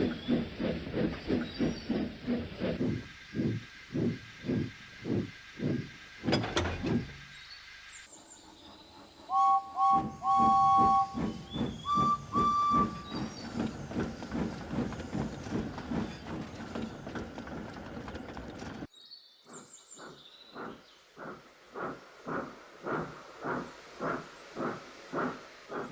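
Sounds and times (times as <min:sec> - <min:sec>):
steam locomotive chuffing: 0:00.0 - 0:18.9, 0:20.0 - 0:25.9
steam whistle toots: 0:09.3 - 0:13.3.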